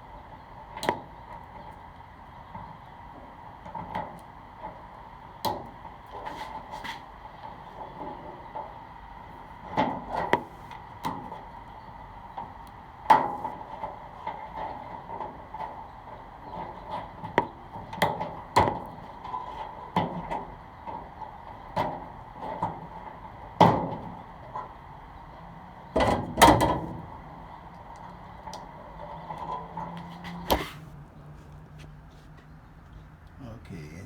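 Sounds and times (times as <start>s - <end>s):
faint steady hum: 30.4s - 34.0s.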